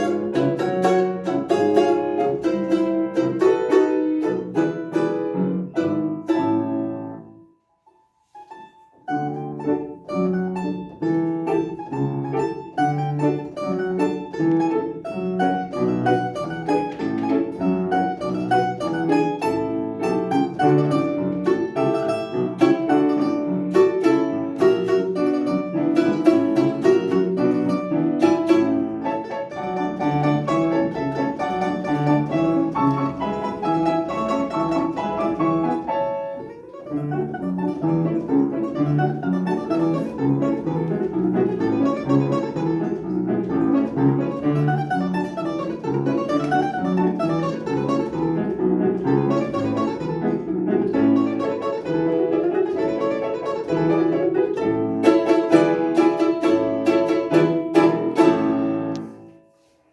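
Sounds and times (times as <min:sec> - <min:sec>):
lively instrumental music: 0:00.0 - 0:07.6, 0:08.3 - 0:59.9.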